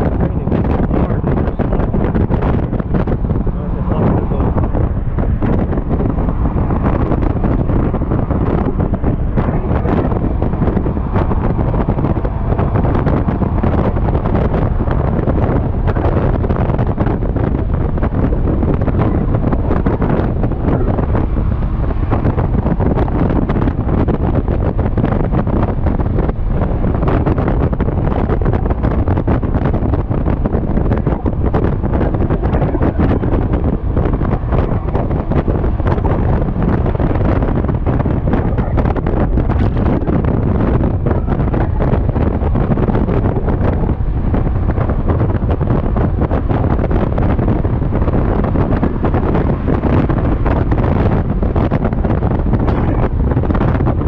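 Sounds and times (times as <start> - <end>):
wind buffeting a microphone: 0.0 - 54.0.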